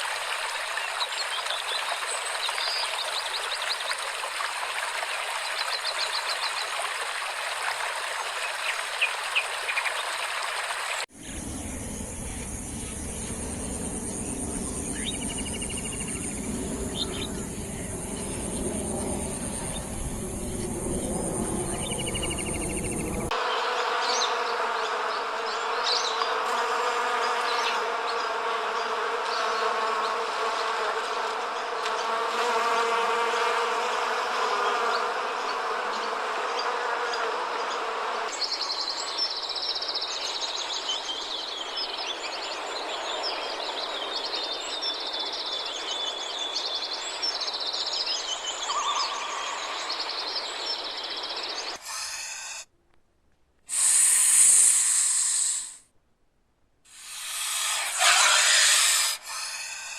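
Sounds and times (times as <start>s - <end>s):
droning insect buzz: 8.1s - 52.6s, 56.9s - 59.9s
pulsing insect trill: 11.2s - 23.3s, 56.9s - 59.9s
high shrill insect tone: 53.7s - 55.8s, 56.9s - 59.9s.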